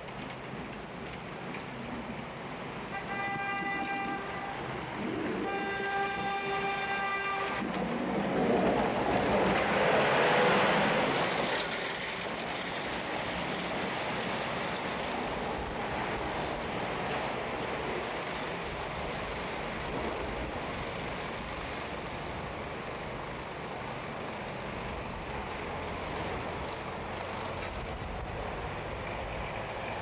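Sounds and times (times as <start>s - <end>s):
city traffic hum: 0.0s - 30.0s
vehicle horn blasts: 2.9s - 4.6s, 5.4s - 7.6s.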